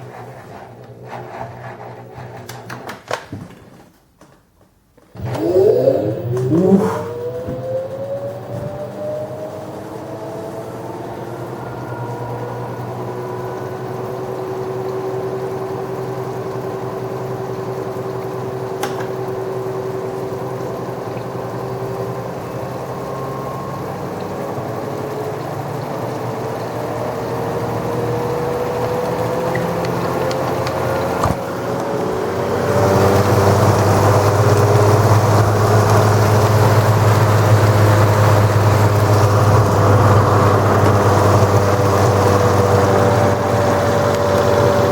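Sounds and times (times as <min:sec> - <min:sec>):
washing machine spinning: 0:05.0 - 0:44.9.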